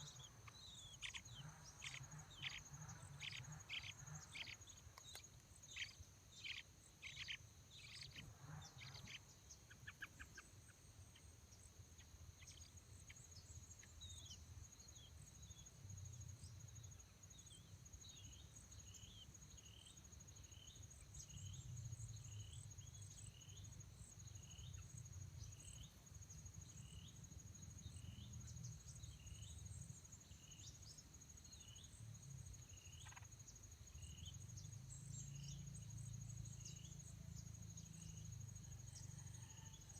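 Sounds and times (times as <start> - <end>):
small bird calling: 0.0 - 10.5, 32.8 - 33.3
high-pitched insect trill: 11.9 - 39.9.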